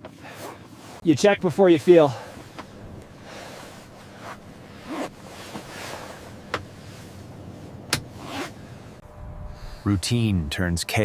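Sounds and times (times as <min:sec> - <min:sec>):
rushing wind: 0:00.8 - 0:10.6.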